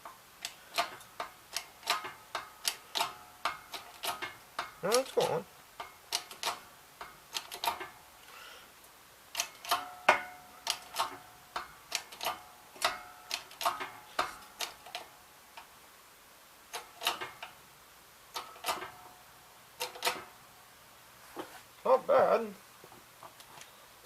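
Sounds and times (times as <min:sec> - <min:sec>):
sharp metallic clicks and ticks: 0:00.4 - 0:07.9.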